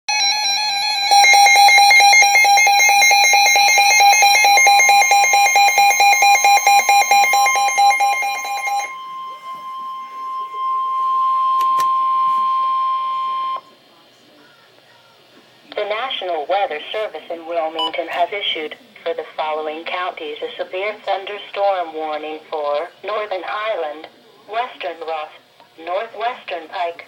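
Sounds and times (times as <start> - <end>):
pulsing electronic alarm beep: 0.1 - 13.6
steady high tone: 0.1 - 13.7.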